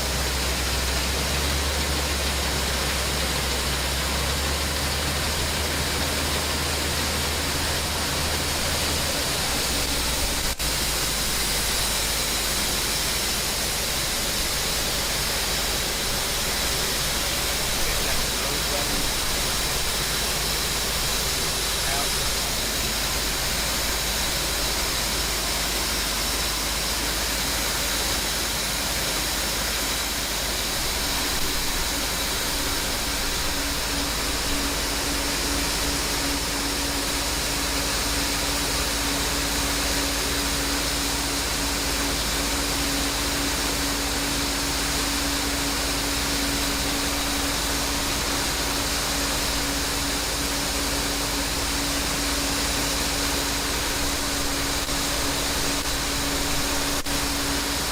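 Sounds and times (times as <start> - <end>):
farm machinery engine drone: 0.0 - 57.9
low steady hum: 0.0 - 57.9
thin high whine: 29.5 - 57.9.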